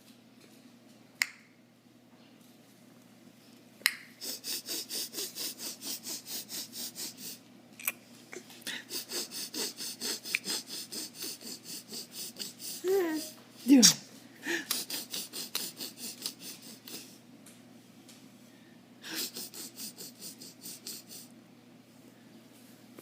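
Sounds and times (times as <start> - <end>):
breathy hissing puffs: 4.2 - 7.4, 8.6 - 13.3, 14.4 - 17.2, 19.0 - 21.3
tongue clicks: 7.8 - 8.0.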